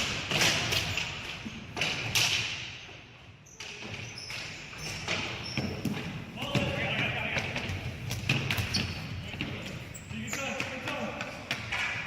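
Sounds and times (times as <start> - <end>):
hockey sticks and ball knocking: 0.0 - 3.0, 3.6 - 12.0.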